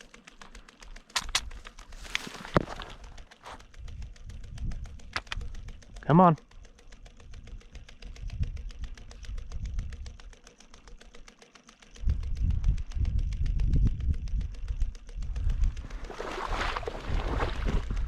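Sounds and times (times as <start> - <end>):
faint steady ticking: 0.0 - 16.2
wind buffeting microphone: 12.0 - 18.0.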